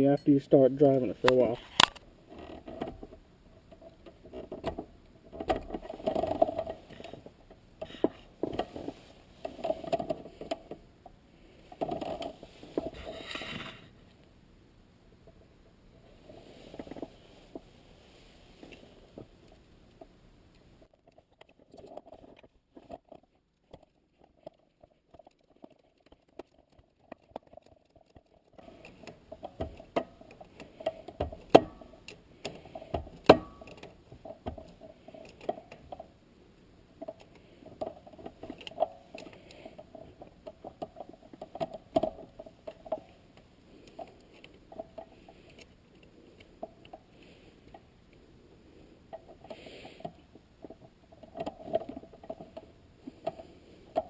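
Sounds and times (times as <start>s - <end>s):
metallic clicks and knocks: 20.9s - 36.0s.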